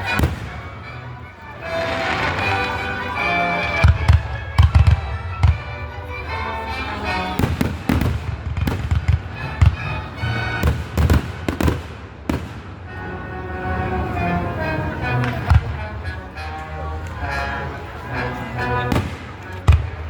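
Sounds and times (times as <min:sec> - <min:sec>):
fireworks bangs and booms: 0:00.0 - 0:01.0, 0:01.7 - 0:03.1, 0:03.8 - 0:05.7, 0:07.3 - 0:12.9, 0:18.9 - 0:20.0
music playing: 0:00.0 - 0:10.9, 0:12.8 - 0:20.0.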